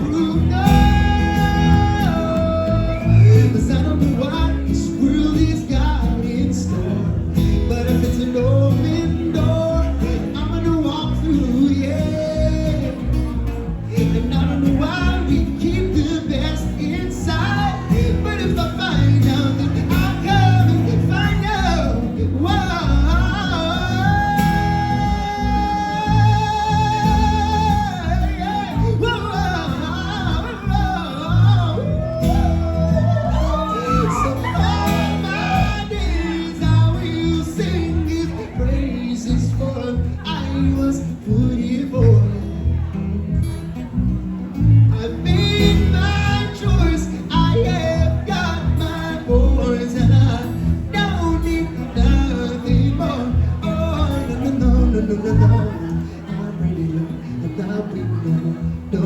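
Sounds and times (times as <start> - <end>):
person singing: 0.0 - 42.8
live reggae band music: 0.0 - 59.0.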